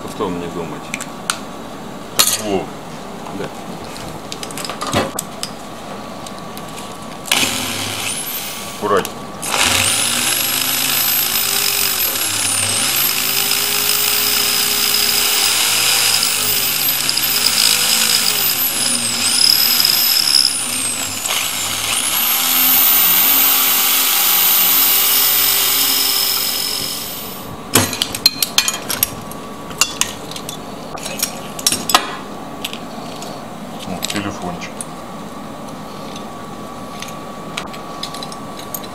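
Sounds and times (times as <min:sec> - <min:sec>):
electric drill whining: 0:07.3 - 0:08.8, 0:09.4 - 0:27.4.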